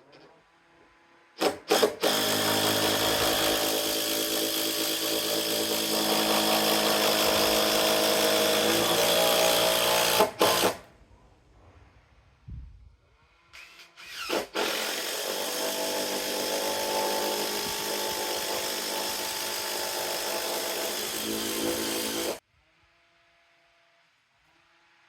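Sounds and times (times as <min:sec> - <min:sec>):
chainsaw cutting wood: 0:01.4 - 0:10.8, 0:13.6 - 0:22.4.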